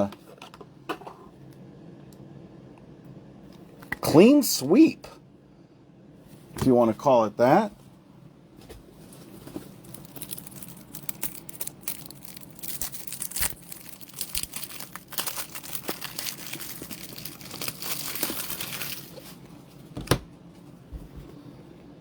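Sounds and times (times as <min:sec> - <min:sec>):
foil wrappers crinkling and tearing: 0:09.5 - 0:19.4.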